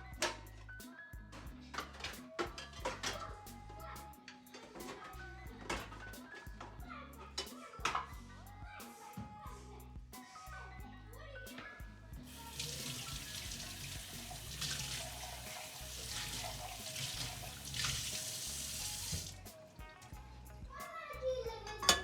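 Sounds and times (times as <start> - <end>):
water running from a tap into a sink: 12.3 - 19.5.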